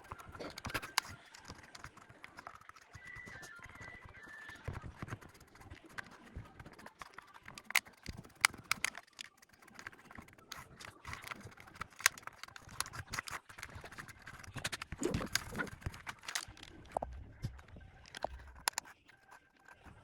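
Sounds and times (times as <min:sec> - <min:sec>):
plastic keycaps clicking: 0:00.0 - 0:20.0
handling noise: 0:07.5 - 0:19.0.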